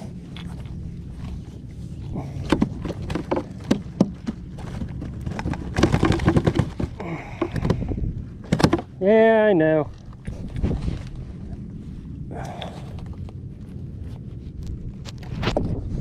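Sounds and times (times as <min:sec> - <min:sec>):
knocks and clatter on kayak: 0:02.1 - 0:09.2
water and wind: 0:07.2 - 0:16.0.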